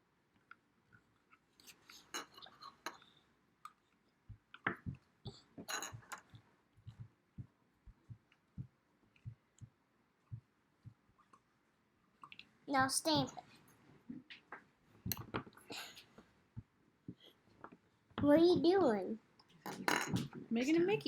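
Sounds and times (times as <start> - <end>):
soft thumps of dough patted: 4.3 - 11.2.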